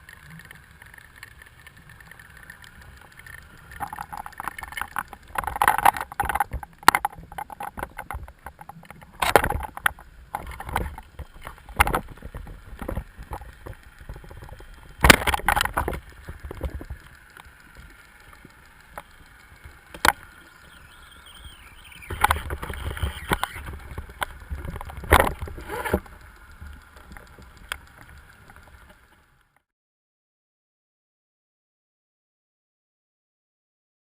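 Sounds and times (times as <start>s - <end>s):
underwater water noise: 0.0s - 29.6s
dense crackling clicks: 0.0s - 29.7s
sharp knocks underwater: 3.8s - 17.0s, 22.1s - 26.1s.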